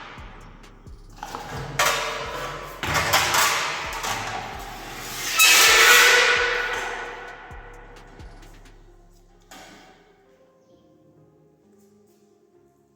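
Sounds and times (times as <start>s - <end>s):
fan striking metal heater: 0.0s - 10.0s
background music with steady beat: 0.0s - 10.3s.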